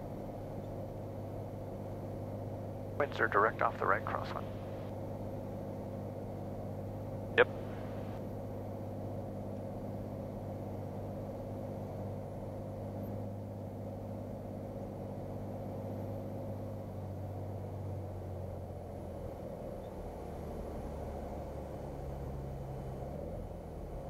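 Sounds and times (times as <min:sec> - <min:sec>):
piston aircraft engine from cabin: 0:00.0 - 0:23.8.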